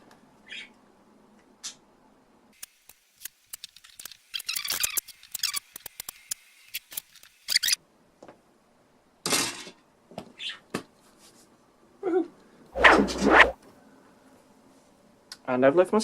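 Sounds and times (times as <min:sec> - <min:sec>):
short scrapes and rustles: 0:12.8 - 0:13.6.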